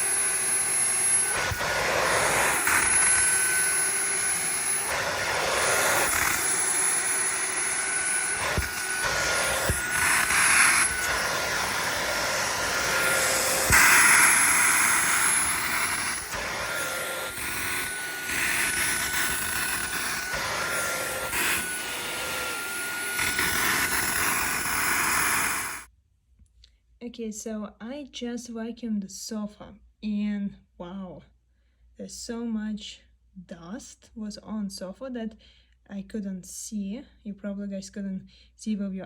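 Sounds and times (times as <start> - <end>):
stick vacuum motor whine: 0.0 - 25.9.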